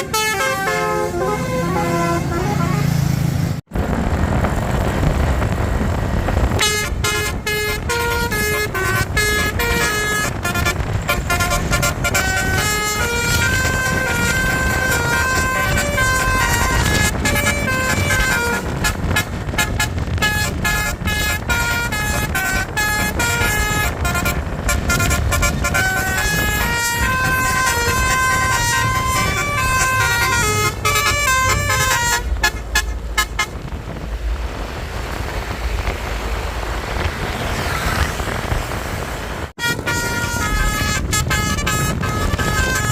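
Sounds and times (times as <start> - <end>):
musical bus horn playing a tune: 0.0 - 3.3, 6.6 - 33.7, 39.6 - 42.9
steady rushing noise: 0.0 - 42.9.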